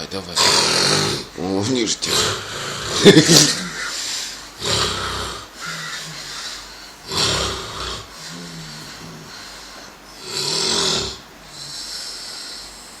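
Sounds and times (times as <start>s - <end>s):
person snoring heavily: 0.4s - 1.4s, 2.0s - 9.6s, 10.2s - 13.0s
quiet breathing: 3.6s - 13.0s.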